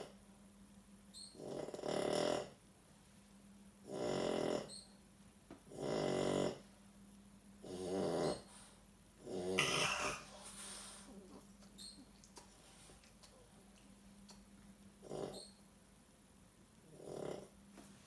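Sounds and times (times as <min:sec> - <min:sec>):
dog snoring: 0:01.3 - 0:02.6, 0:03.8 - 0:04.8, 0:05.7 - 0:06.7, 0:07.6 - 0:11.4, 0:15.0 - 0:15.6, 0:16.9 - 0:17.6
dog breathing: 0:09.6 - 0:11.5.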